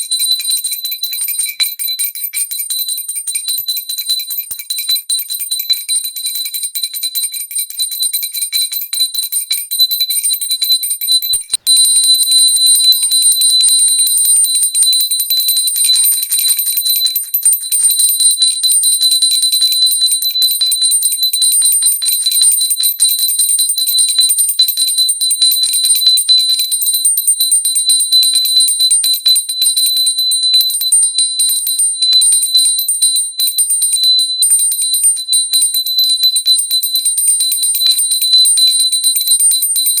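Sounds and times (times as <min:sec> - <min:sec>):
hand bell ringing: 0:07.7 - 0:40.0.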